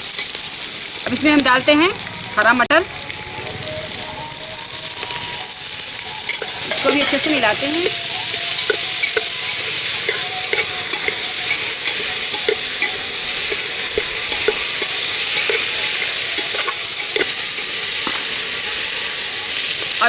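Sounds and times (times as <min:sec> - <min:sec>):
vegetables sizzling in hot fat: 0:00.0 - 0:20.0
spoon scraping pot: 0:06.3 - 0:18.4.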